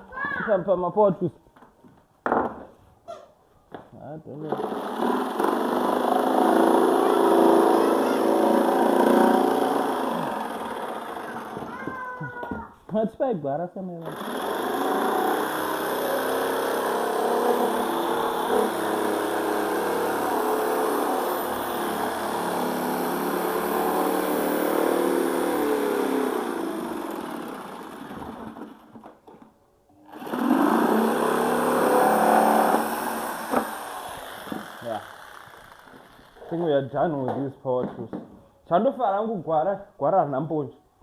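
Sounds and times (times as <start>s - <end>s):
electric drill whining: 4.5s - 11.9s, 14.0s - 28.8s, 30.0s - 36.6s.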